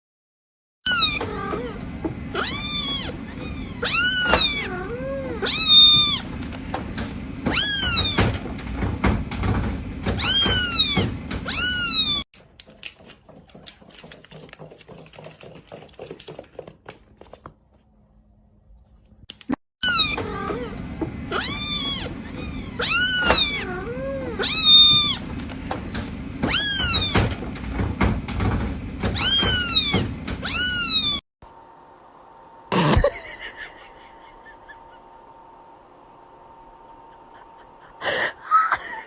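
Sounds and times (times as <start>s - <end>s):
cat meowing: 2.4s - 6.3s, 10.2s - 12.2s, 21.3s - 25.2s, 29.2s - 31.2s.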